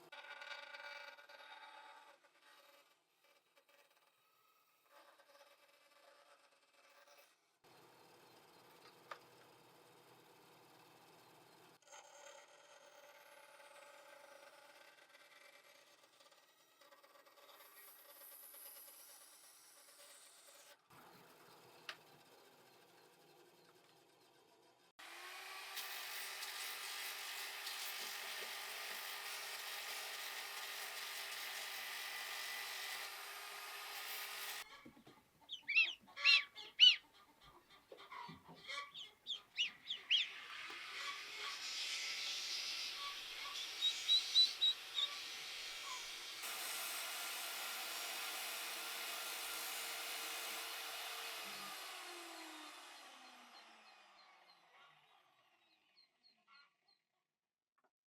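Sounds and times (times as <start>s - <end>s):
poultry calling loudly: 35.4s - 40.3s.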